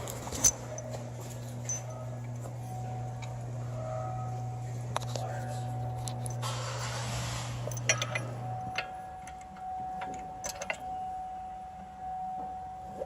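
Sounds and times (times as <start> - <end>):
low hum: 0.0 - 13.0
metallic tool clicks and clinks: 7.7 - 10.9.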